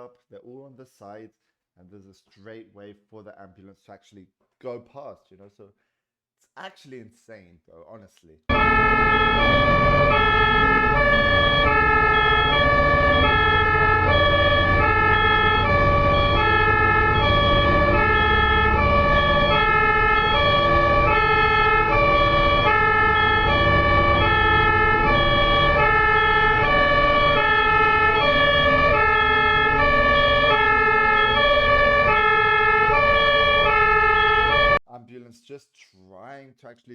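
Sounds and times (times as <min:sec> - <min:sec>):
traffic rumble: 0:08.5 - 0:33.6
ambulance two-tone siren: 0:08.5 - 0:34.8.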